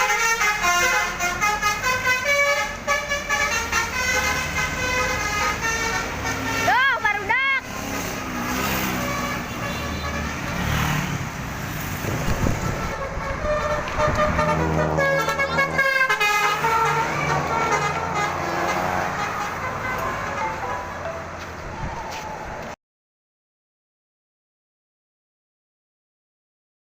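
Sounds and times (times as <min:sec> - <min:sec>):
bus musical horn tune: 0:00.0 - 0:07.1, 0:08.2 - 0:10.7, 0:12.4 - 0:21.4
bus engine running: 0:00.0 - 0:22.8.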